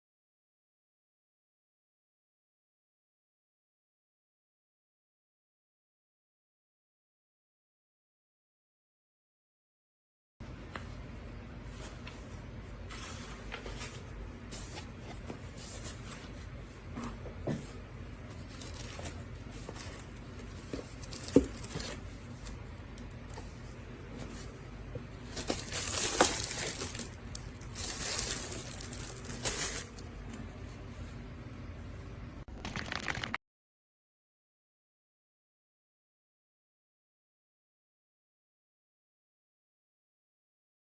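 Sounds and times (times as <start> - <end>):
crinkling and rustling: 11.7 - 30.7.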